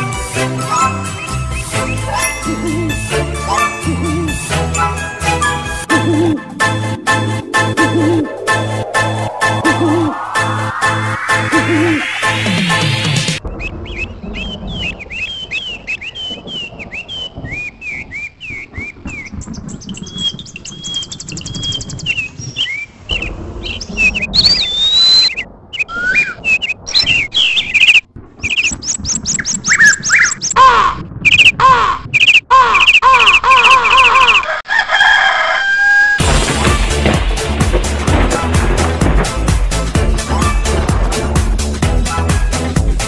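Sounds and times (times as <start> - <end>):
music: 0.0 - 13.4, 36.2 - 43.0
birds chirping and singing: 0.6 - 4.3, 13.4 - 34.5.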